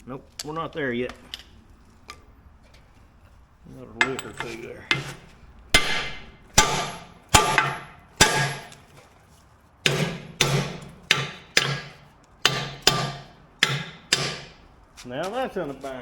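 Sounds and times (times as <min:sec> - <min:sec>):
hammer striking steel: 0:04.0 - 0:08.8, 0:09.8 - 0:14.6.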